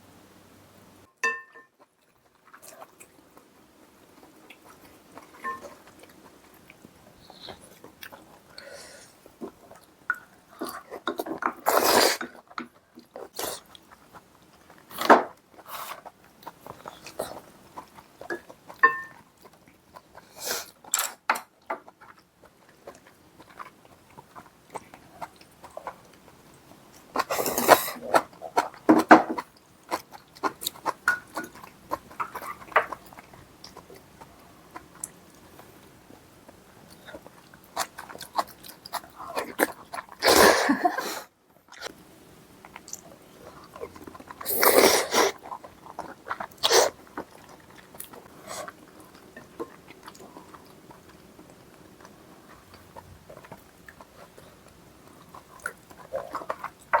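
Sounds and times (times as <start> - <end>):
chewing and biting: 21.8 - 40.2, 42.6 - 57.0.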